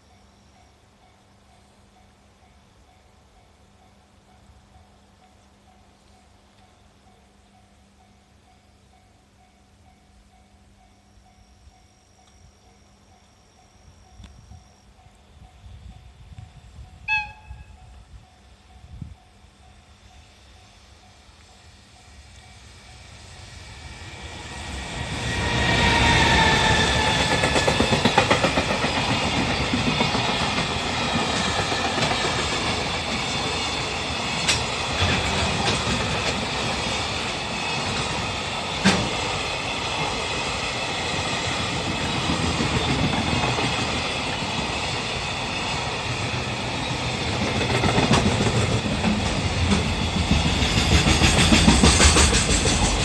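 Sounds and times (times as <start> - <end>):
locomotive whine: 8.5 - 53.0
freight wagons rumbling and clacking: 27.3 - 37.3, 47.2 - 53.0.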